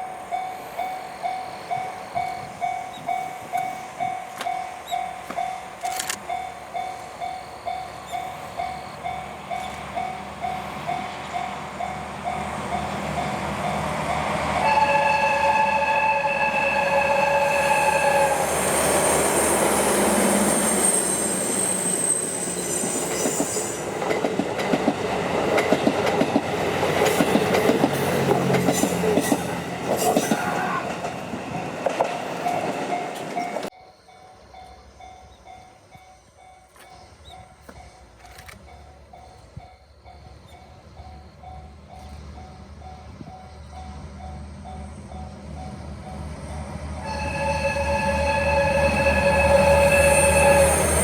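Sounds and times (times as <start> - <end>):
diesel locomotive horn: 13.3 - 21.4, 46.9 - 51.0
high wheel squeal: 14.0 - 23.8, 46.2 - 51.0
train wheels clattering: 22.8 - 33.7.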